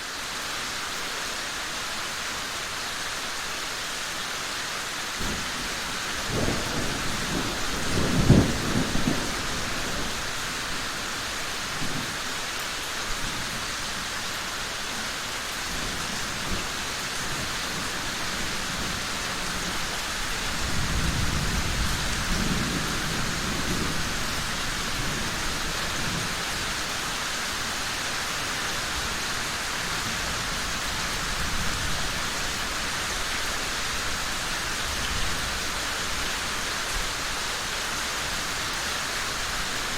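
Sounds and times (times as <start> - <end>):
heavy rain: 0.0 - 39.9
thunder rumbling: 5.2 - 12.2.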